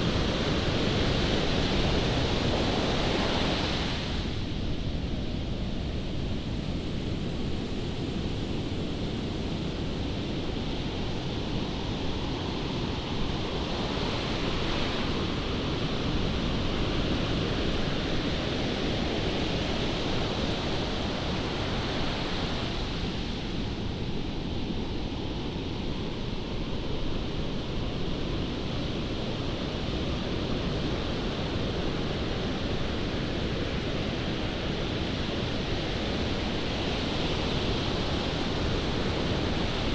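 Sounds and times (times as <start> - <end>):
ocean surf: 0.0 - 39.9
wind rumbling on microphone: 0.0 - 39.9.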